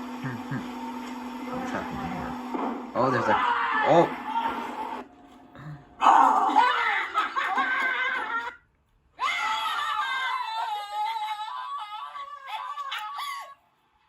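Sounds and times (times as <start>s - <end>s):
person screaming high-pitched: 3.2s - 4.9s, 6.0s - 7.1s, 9.2s - 13.6s.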